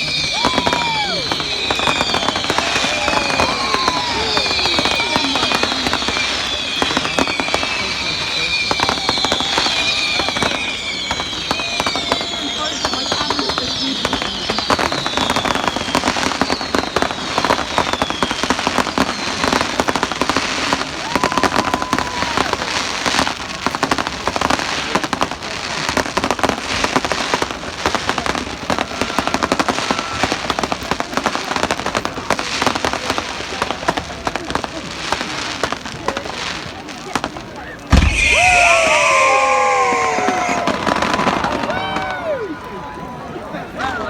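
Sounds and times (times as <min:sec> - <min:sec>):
fireworks whistles: 0:00.0 - 0:24.3, 0:37.8 - 0:42.2
fireworks bangs and crackling: 0:00.0 - 0:43.8.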